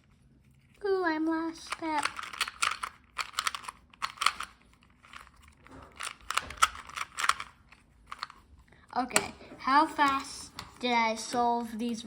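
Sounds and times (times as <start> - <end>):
puzzle cube clicking turns: 1.6 - 8.6.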